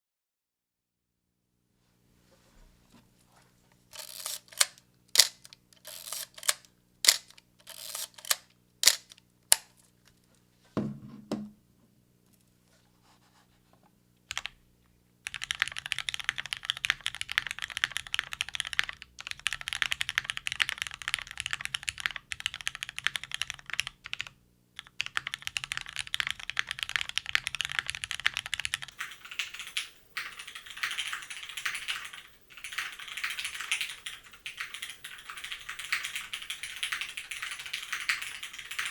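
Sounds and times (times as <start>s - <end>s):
mechanical keyboard typing: 4.0s - 9.7s, 14.3s - 14.6s, 15.2s - 38.9s.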